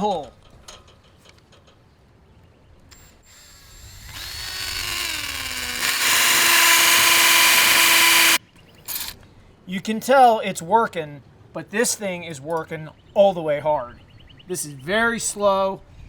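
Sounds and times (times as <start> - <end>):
hammer drill boring into rock: 3.3 - 9.2.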